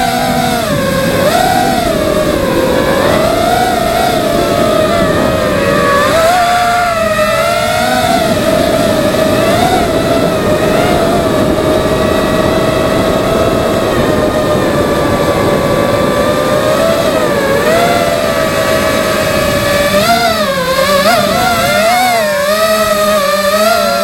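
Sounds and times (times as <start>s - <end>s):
propeller wash and wind rush: 0.0s - 24.0s
quadcopter motors whining: 0.0s - 24.0s.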